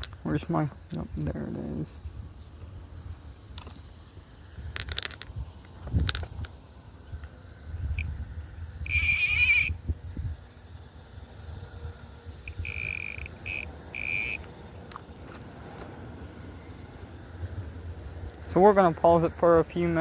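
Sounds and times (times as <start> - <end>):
animal calling at high pitch: 8.8 - 9.8, 12.5 - 14.4.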